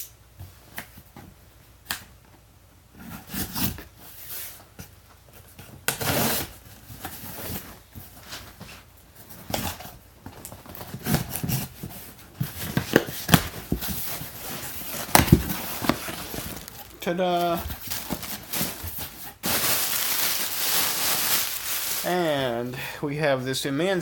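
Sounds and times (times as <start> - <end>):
cardboard box being opened: 10.8 - 22.2.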